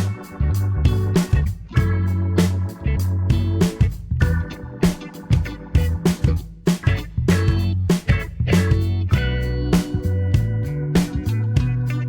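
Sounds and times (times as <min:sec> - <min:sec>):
bass: 0:00.0 - 0:12.0
drums: 0:00.0 - 0:12.0
organ-like chords: 0:00.0 - 0:12.0.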